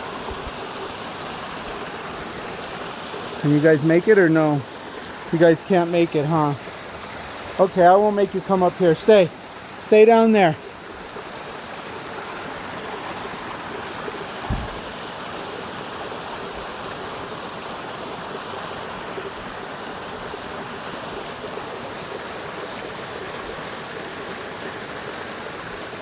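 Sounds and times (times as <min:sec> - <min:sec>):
waterfall rushing: 0:00.0 - 0:26.0
low thump: 0:14.4 - 0:14.9.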